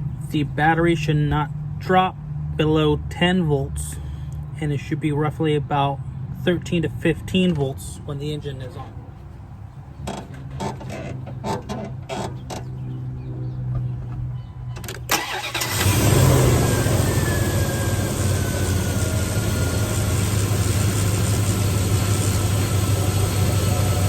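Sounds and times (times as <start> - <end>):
car engine starting and idling: 6.9 - 24.0.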